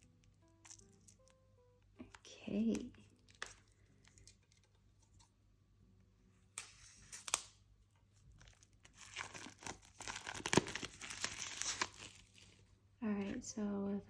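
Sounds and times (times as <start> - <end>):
plastic crinkling: 0.0 - 1.4, 2.6 - 5.3, 8.1 - 12.7
plastic shrink wrap tearing: 0.0 - 1.4, 2.6 - 4.7, 6.6 - 12.7.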